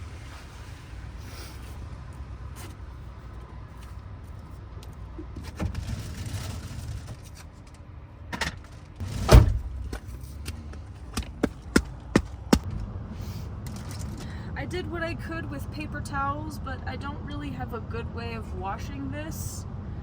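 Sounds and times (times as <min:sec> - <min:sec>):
steady low rumble: 0:08.1 - 0:20.0
loud thump: 0:09.0 - 0:09.9.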